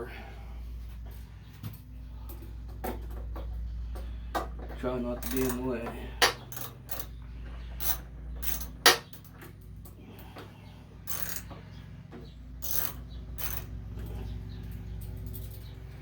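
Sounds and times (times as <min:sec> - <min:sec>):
steady low hum: 0:00.0 - 0:16.0
socket ratchet clicking: 0:07.8 - 0:09.3, 0:11.1 - 0:11.4, 0:12.6 - 0:13.7
sharp metal click: 0:12.6 - 0:13.7.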